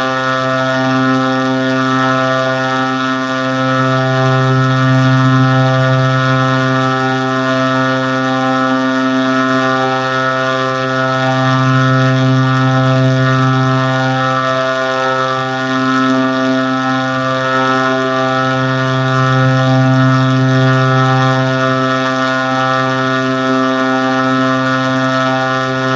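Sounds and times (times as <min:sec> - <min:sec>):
low buzzy tone: 0:00.0 - 0:25.9.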